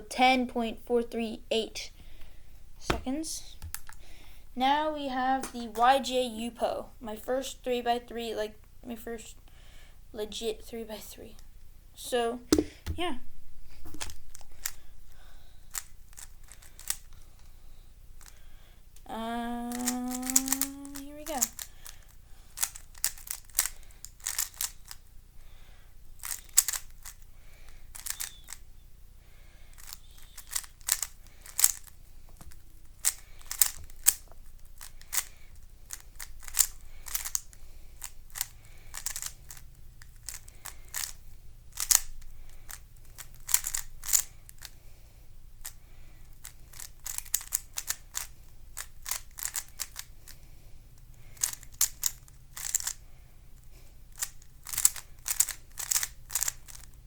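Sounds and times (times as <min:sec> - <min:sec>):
puzzle cube plastic clicks: 0:02.8 - 0:04.2, 0:13.8 - 0:25.5, 0:26.1 - 0:28.8, 0:29.5 - 0:44.9, 0:45.6 - 0:57.0.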